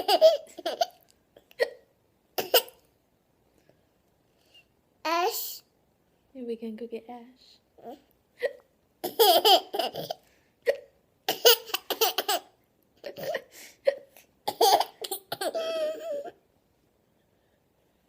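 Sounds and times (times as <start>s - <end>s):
toddler laughing: 0.0s - 1.0s, 9.0s - 10.2s, 11.3s - 13.5s, 14.5s - 16.4s.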